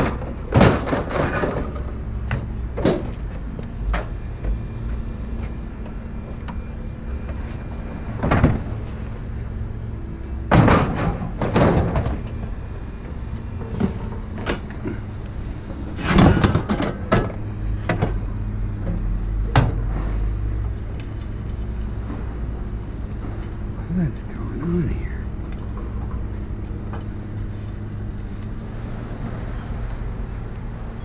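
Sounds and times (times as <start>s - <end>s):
objects banging and clattering: 0.0s - 4.1s, 10.5s - 12.3s, 15.9s - 18.2s
vehicle engine idling: 12.0s - 31.0s.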